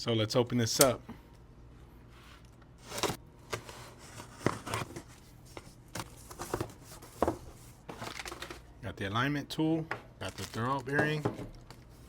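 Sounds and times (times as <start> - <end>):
packaging rustling and tearing: 10.2 - 10.9.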